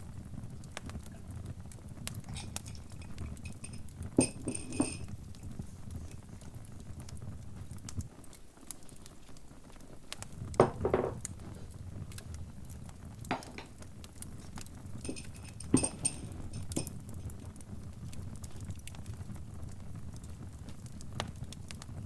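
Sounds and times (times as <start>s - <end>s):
fire crackling: 0.0s - 22.0s
pops and clinks: 2.3s - 5.2s, 13.3s - 13.9s, 15.0s - 17.2s.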